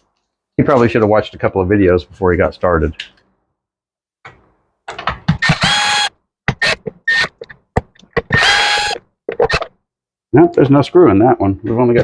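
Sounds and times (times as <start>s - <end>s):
cordless drill motor whine: 5.4s - 7.3s, 8.3s - 9.0s.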